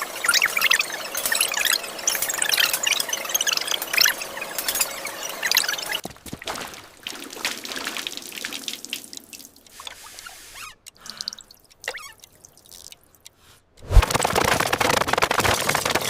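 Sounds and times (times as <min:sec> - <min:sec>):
water dripping and trickling: 0:05.6 - 0:13.4.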